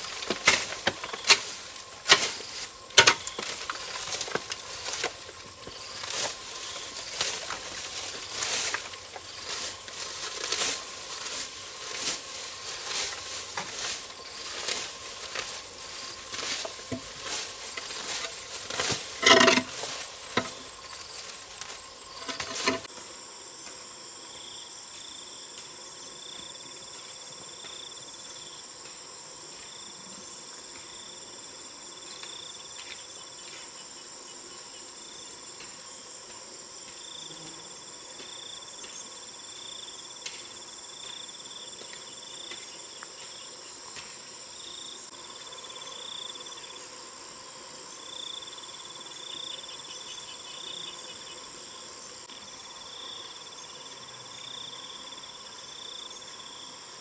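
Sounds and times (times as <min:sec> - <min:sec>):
pulsing insect trill: 0:00.0 - 0:22.9
insects droning: 0:00.0 - 0:57.0.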